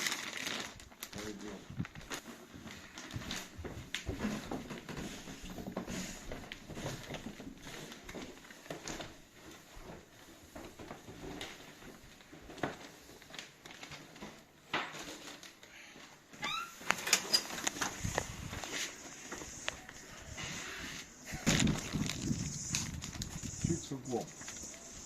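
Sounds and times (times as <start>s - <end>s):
footsteps: 1.7s - 13.4s, 16.8s - 25.0s.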